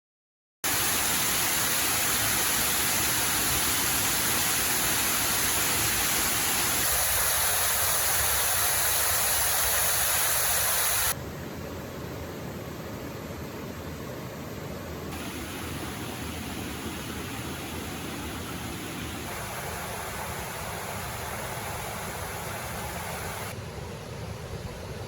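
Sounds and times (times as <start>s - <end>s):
waterfall rushing: 0.7s - 11.2s, 15.2s - 23.5s.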